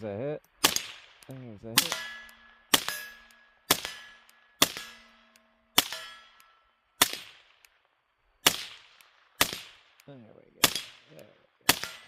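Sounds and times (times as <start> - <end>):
suppressed pistol shots: 0.6 - 6.3, 7.0 - 7.7, 8.4 - 10.0, 10.6 - 12.0
steel target ringing: 1.8 - 7.2.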